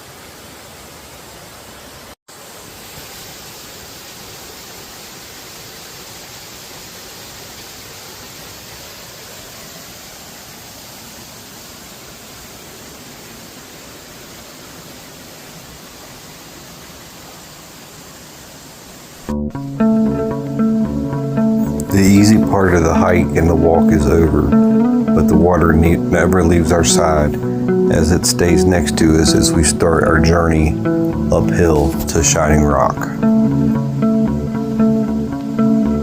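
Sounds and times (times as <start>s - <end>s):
creek rushing over cascades: 0.0s - 36.0s
guitar music: 19.2s - 36.0s.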